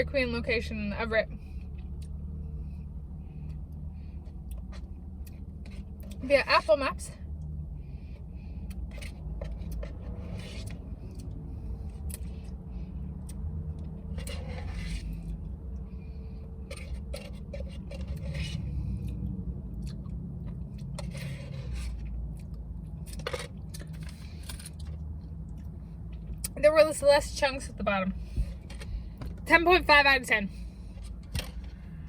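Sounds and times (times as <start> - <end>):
steady low hum: 0.0 - 32.0
spoon scraping a cup: 8.9 - 10.8, 14.2 - 15.3, 16.6 - 18.8.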